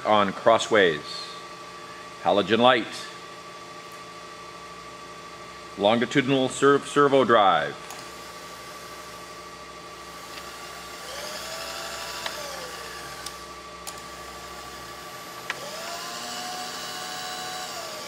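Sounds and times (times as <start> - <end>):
power feed motor whine: 7.9 - 18.0.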